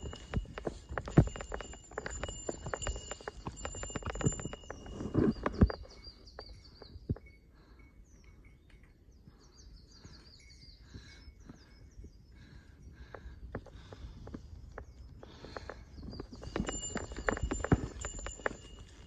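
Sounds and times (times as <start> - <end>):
footsteps on stony trail: 0.0 - 7.0, 13.0 - 19.0
songbird singing: 0.0 - 19.0.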